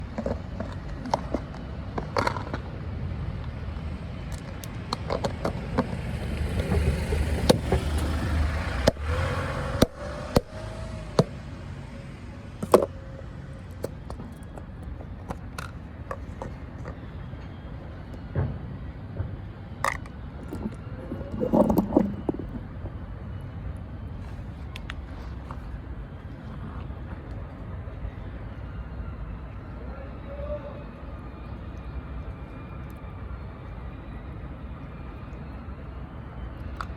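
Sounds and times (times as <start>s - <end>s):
vehicle passing: 0.0s - 28.0s.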